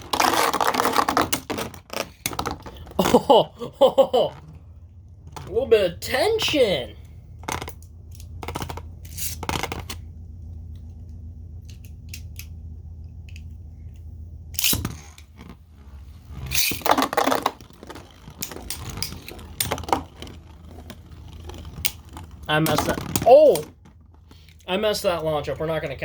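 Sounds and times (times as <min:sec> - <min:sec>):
plastic clicks and scrapes: 0:00.0 - 0:03.0, 0:16.4 - 0:24.6
spinning tops clashing: 0:16.5 - 0:20.4.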